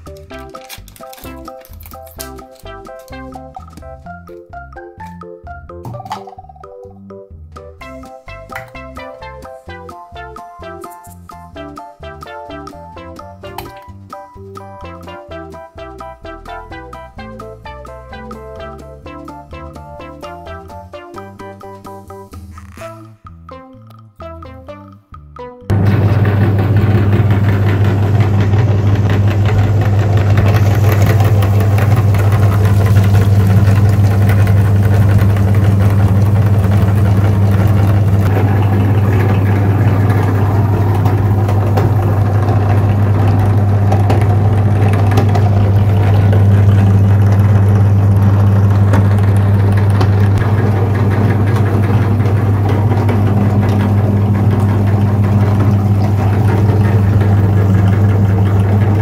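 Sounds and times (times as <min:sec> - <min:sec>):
motor humming: 0:25.7 - 0:59.0.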